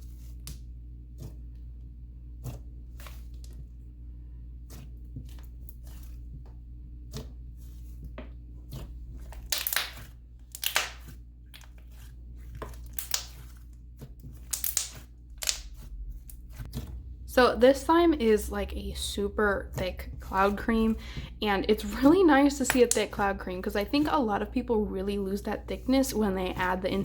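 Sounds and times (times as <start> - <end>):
slime squished by hand: 8.7 - 16.8
slime tearing rasps: 9.4 - 11.0, 12.8 - 13.5, 14.4 - 16.4.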